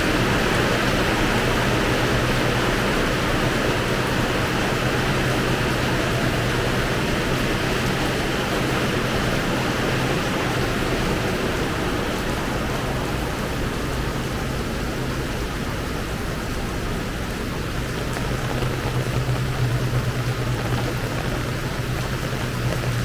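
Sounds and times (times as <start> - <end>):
heavy rain pouring: 0.0 - 23.0
constant low hum: 17.3 - 23.0.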